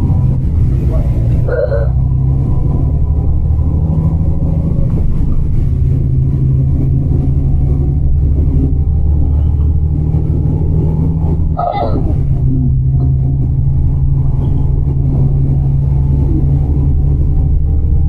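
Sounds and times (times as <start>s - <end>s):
bus engine and road rumble: 0.0s - 18.0s.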